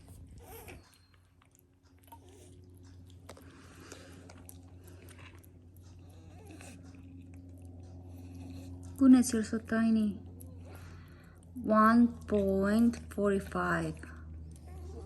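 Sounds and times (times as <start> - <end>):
kitten chewing food: 0.0 - 13.2.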